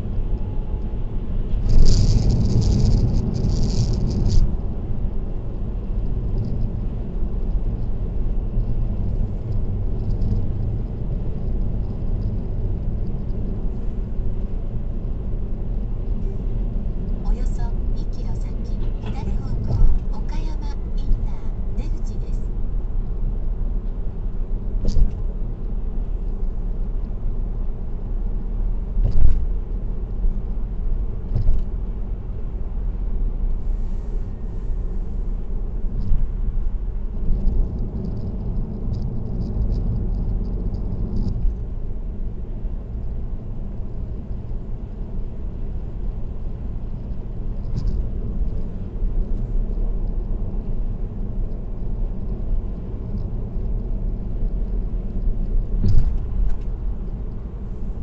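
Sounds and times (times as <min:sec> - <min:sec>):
road and tyre rumble: 0:00.0 - 0:58.0
thumps from road bumps: 0:28.9 - 0:29.8, 0:31.1 - 0:32.0, 0:47.1 - 0:50.4, 0:52.3 - 0:58.0.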